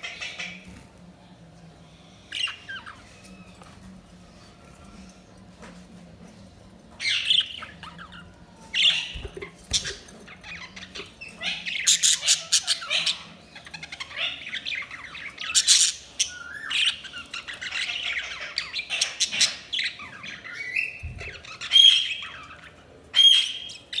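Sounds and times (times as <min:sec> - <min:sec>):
budgerigars chirping and squawking: 0:00.0 - 0:00.9, 0:02.1 - 0:05.3, 0:06.9 - 0:24.0.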